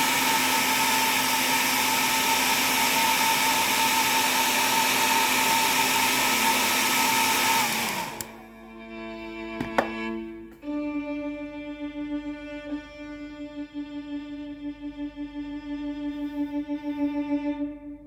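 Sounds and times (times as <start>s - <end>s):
click: 8.2s - 8.4s.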